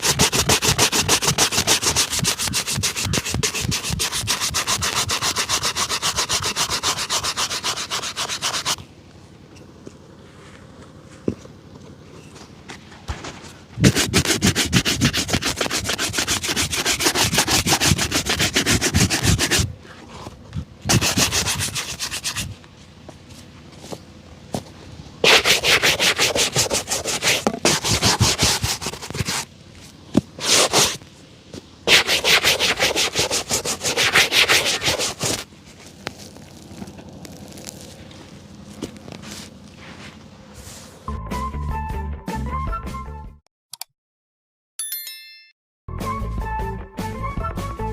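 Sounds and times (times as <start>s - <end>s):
shoe being buffed: 0.0s - 8.8s, 13.8s - 22.6s, 25.2s - 29.5s, 30.4s - 31.0s, 31.9s - 35.5s.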